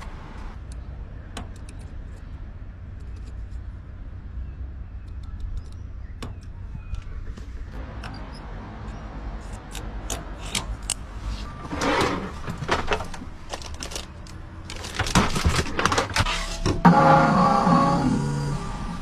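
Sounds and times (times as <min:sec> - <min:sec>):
clicks and rattling knocks of objects: 0:12.4 - 0:16.3.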